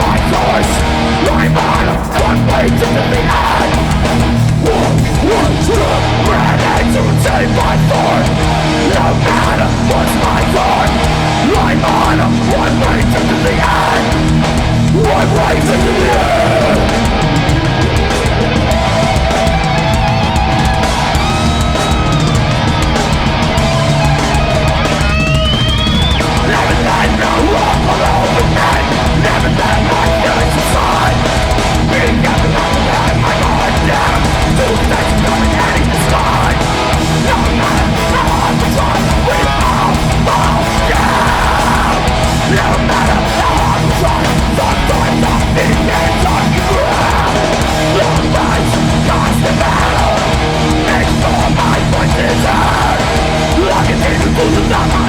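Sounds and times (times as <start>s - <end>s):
loud metal band playing: 0.0s - 55.0s
guitar feedback squeal: 14.1s - 45.2s.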